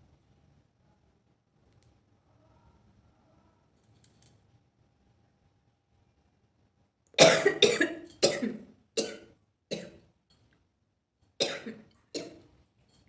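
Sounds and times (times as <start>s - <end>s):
person coughing hard: 7.2s - 10.0s, 11.4s - 12.4s.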